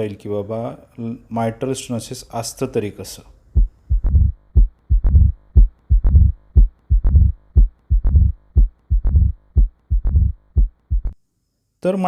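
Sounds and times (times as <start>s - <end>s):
heartbeat with murmur: 3.6s - 11.2s.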